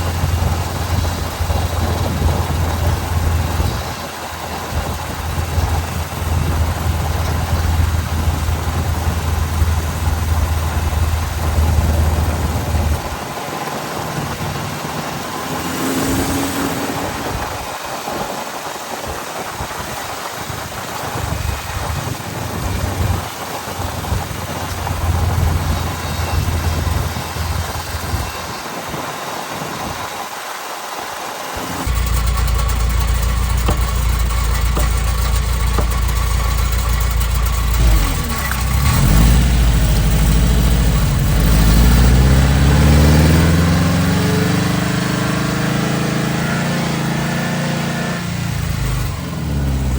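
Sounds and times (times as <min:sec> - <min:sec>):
van engine and road noise: 0:00.0 - 0:18.4, 0:19.0 - 0:28.9, 0:31.4 - 0:49.9.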